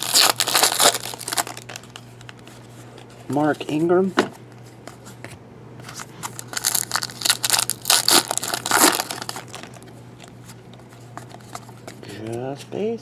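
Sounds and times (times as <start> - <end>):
plastic wrappers crinkling: 0.0 - 2.5, 6.1 - 10.3
low steady hum: 0.0 - 13.0.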